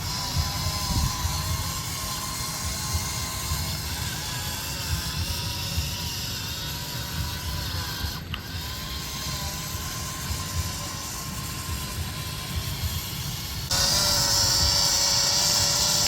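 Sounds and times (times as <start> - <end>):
toy motor whirring and grinding: 0.0 - 16.0.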